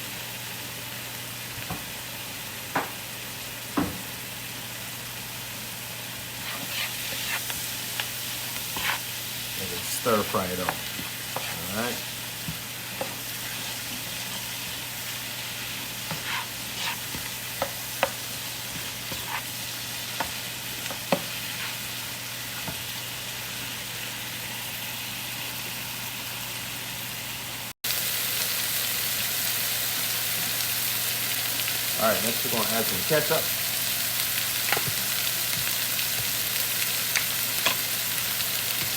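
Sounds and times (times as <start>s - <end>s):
food sizzling in a hot pan: 0.0s - 38.9s.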